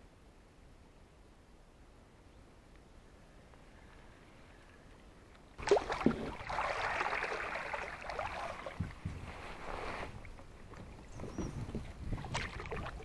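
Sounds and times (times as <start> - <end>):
water splashing against kayak: 5.6 - 13.0.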